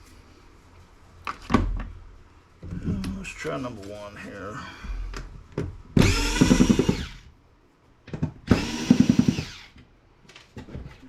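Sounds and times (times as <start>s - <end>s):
power screwdriver motor whine: 6.0s - 7.3s, 8.5s - 9.8s.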